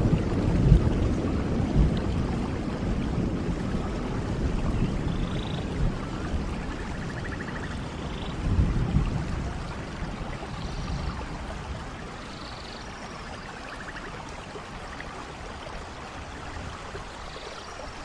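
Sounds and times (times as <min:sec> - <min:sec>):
distant thunder rumble: 0:00.0 - 0:12.2
steady rain: 0:00.0 - 0:18.0.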